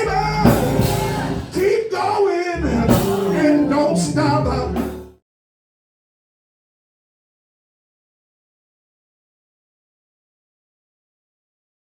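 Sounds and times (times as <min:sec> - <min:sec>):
music with singing: 0:00.0 - 0:05.2.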